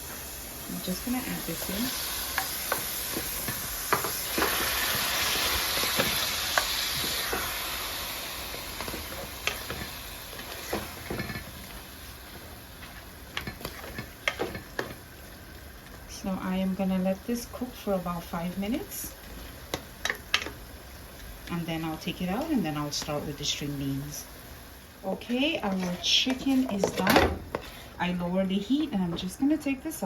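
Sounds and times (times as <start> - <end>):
chicken sizzling in hot oil: 0.0 - 25.6.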